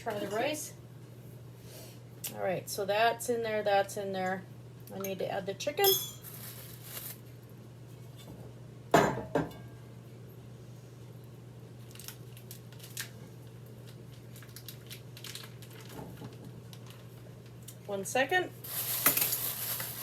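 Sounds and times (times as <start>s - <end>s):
utensils and dishes clattering: 5.8s - 6.6s.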